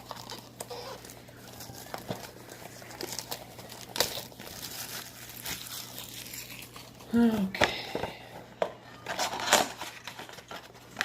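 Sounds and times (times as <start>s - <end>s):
plastic wrap snap: 0.0s - 6.9s
plastic wrapping crinkling: 0.0s - 7.5s, 9.0s - 11.0s.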